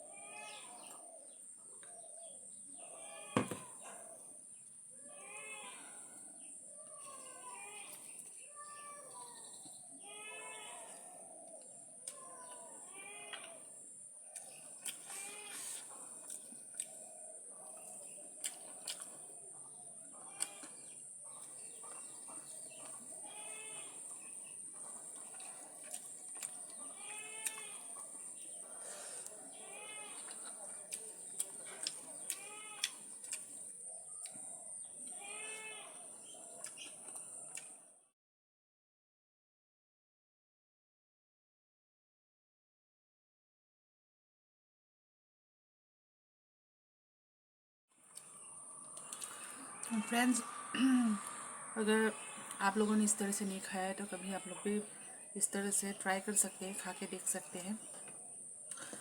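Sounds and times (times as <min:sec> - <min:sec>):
faint calls: 0:00.0 - 0:37.6, 0:48.1 - 0:59.0
sharp knock: 0:03.4 - 0:03.6.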